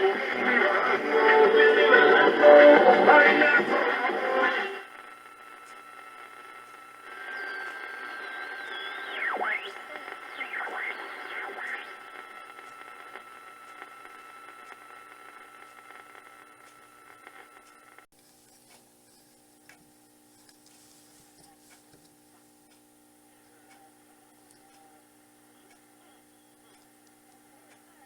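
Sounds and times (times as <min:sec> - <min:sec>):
radio static hiss: 0:00.0 - 0:18.1, 0:20.1 - 0:28.0
steady radio whistle: 0:06.4 - 0:14.1.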